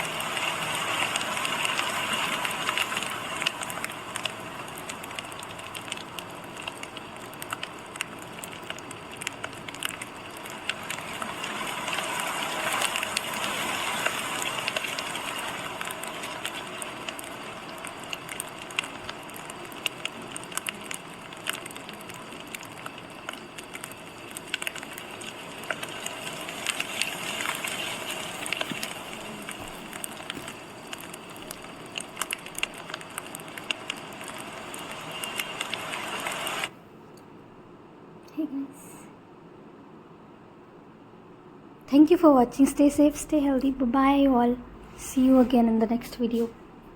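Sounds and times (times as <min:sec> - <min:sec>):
wood fire crackling: 0:00.0 - 0:37.6, 0:41.8 - 0:46.9.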